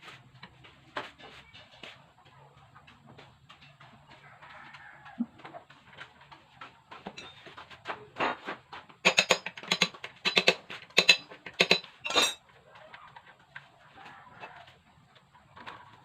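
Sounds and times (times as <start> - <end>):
metal tools clinking: 7.1 - 7.6, 9.0 - 12.4.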